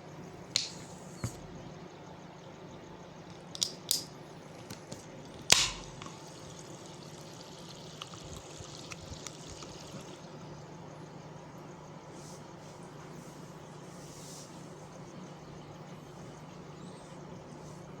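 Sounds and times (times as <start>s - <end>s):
faint steady hiss: 0.0s - 18.0s
can pop and fizz: 0.4s - 1.5s, 3.3s - 10.3s
can clicks: 0.4s - 1.6s, 3.3s - 10.2s.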